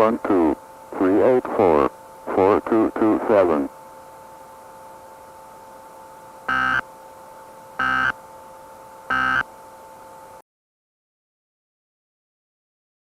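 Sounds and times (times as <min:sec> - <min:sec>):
steady two-note hum and hiss: 0:00.0 - 0:10.4
electronic data bursts: 0:06.5 - 0:06.8, 0:07.8 - 0:08.2, 0:09.1 - 0:09.5.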